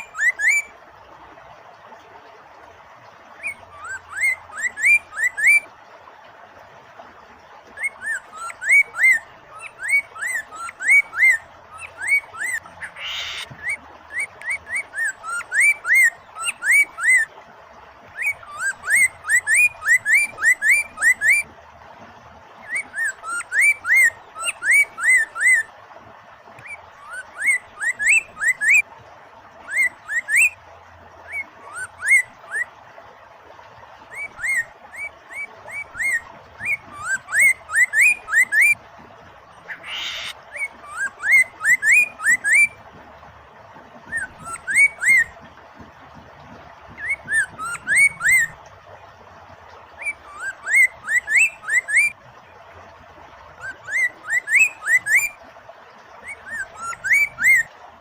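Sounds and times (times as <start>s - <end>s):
bird whistling song: 0.0s - 0.7s, 3.4s - 5.7s, 7.8s - 17.3s, 18.2s - 21.5s, 22.6s - 25.7s, 26.6s - 28.8s, 29.7s - 30.6s, 31.2s - 32.7s, 34.1s - 38.8s, 39.7s - 42.8s, 44.1s - 45.4s, 46.9s - 48.6s, 50.0s - 52.2s, 53.6s - 55.4s, 56.2s - 57.7s
running water: 0.0s - 58.0s.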